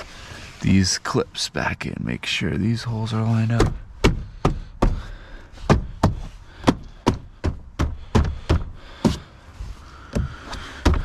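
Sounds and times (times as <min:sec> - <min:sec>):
hand knocking plastic door panel: 0:03.6 - 0:05.0.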